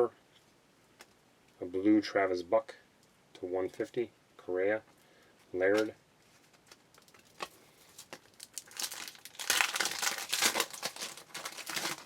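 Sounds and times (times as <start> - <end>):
wrapper tearing and crinkling: 6.6 - 12.0.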